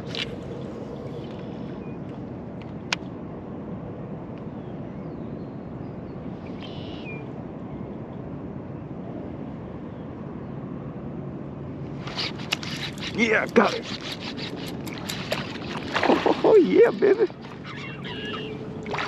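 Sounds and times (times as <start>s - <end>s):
wind rumbling on microphone: 0.0s - 19.0s
bird call: 17.5s - 18.7s.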